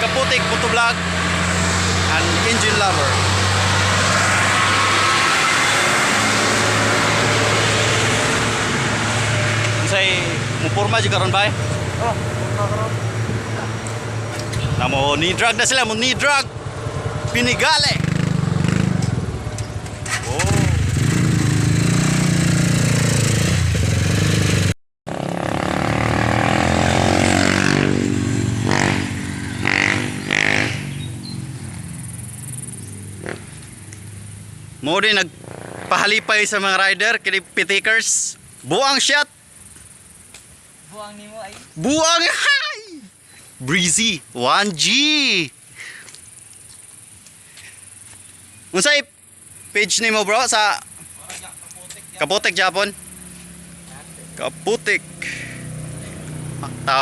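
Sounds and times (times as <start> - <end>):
motorcycle engine running: 9.5 - 34.6, 52.7 - 57.0.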